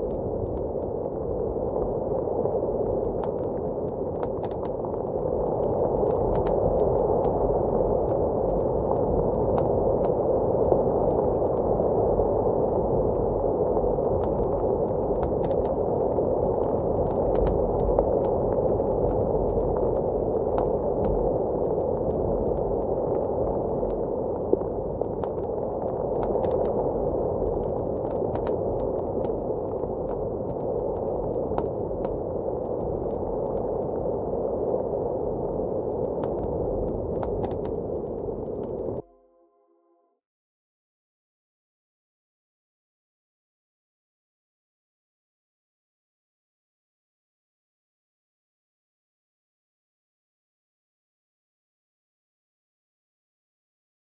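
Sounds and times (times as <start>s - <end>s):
wood fire crackling and popping: 0.0s - 39.0s
blizzard wind rushing: 0.0s - 39.1s.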